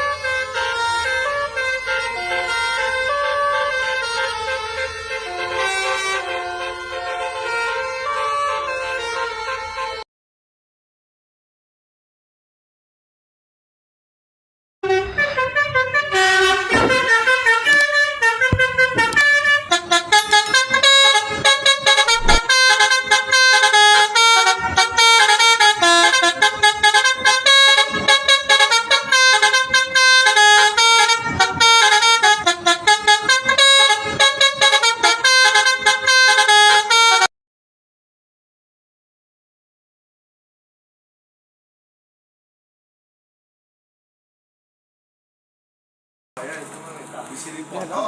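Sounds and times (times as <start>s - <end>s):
multi-tone bus horn melody: 0.0s - 10.0s, 14.8s - 37.3s.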